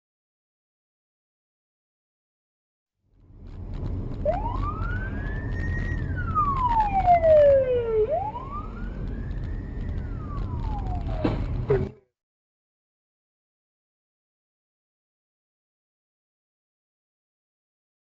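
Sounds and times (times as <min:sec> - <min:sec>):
engine and road rumble: 0:03.1 - 0:12.1
emergency siren wailing: 0:04.2 - 0:11.9.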